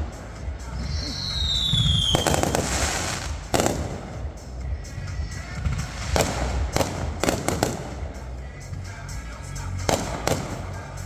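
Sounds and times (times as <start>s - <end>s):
fireworks bangs: 0.0s - 4.7s, 5.3s - 8.3s, 9.9s - 11.0s
background music: 0.0s - 11.0s.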